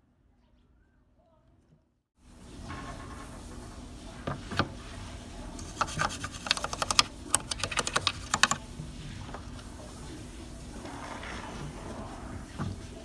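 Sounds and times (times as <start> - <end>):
rubbing: 5.6 - 8.6
small hard parts clicking: 5.6 - 8.6.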